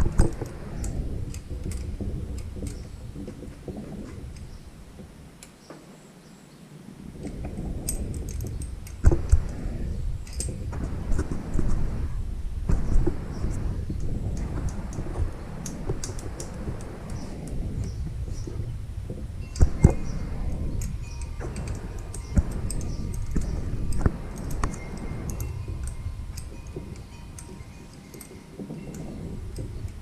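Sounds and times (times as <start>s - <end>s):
low rumble: 7.2s - 27.9s.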